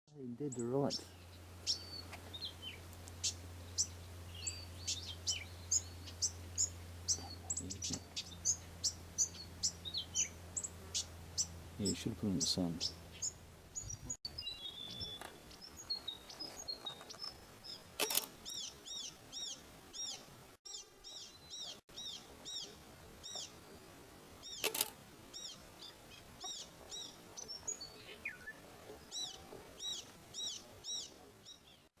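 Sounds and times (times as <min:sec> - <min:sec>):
thin bird twittering: 0:00.6 - 0:23.6
sharp clicks: 0:18.0 - 0:18.3, 0:24.6 - 0:25.0.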